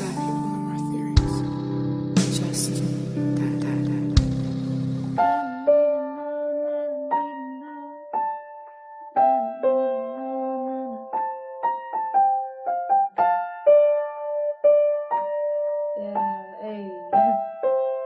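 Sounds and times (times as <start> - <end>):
slow solo piano melody: 0.0 - 18.0.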